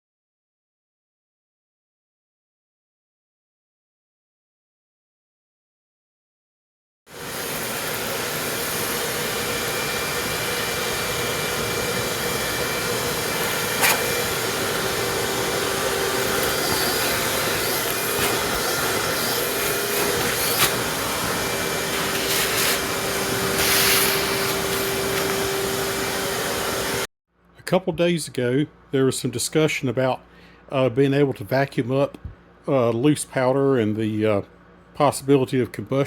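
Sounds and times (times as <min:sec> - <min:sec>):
vacuum cleaner running: 0:07.1 - 0:27.1.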